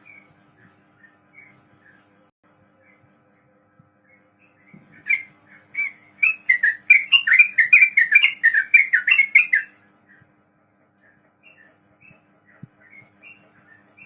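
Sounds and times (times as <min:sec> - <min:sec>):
bird singing whistled notes: 0:04.0 - 0:09.8.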